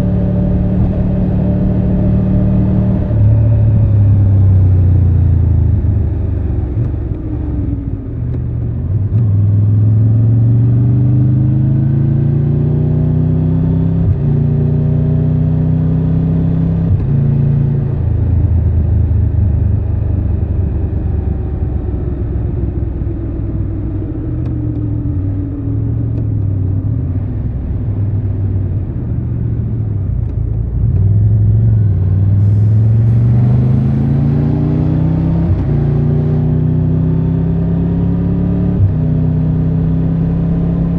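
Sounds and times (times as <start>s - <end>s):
motorcycle engine revving: 31.7s - 40.4s.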